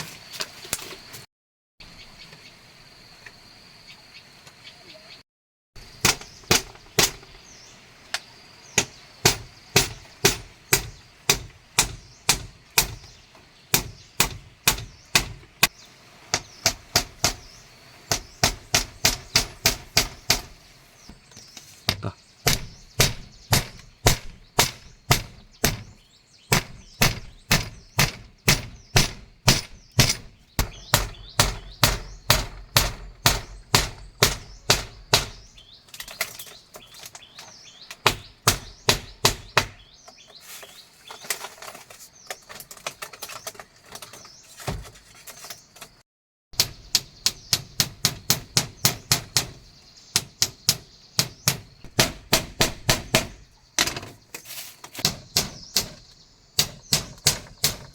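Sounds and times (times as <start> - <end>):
birds chirping: 1.8 - 5.2, 5.8 - 46.0, 46.6 - 57.9
hand tool striking wood: 6.0 - 7.4, 8.2 - 20.6, 21.4 - 40.4, 46.6 - 57.9.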